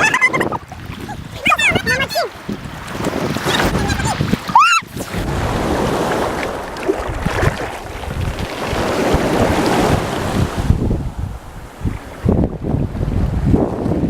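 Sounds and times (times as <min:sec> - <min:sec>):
sea surf: 0:00.0 - 0:14.0
wind buffeting microphone: 0:00.0 - 0:14.0.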